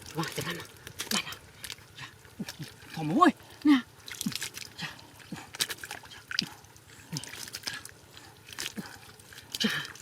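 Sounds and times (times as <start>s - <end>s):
drips and slaps: 0.0s - 3.2s, 4.0s - 10.0s
hands splashing in mud and water: 4.0s - 10.0s.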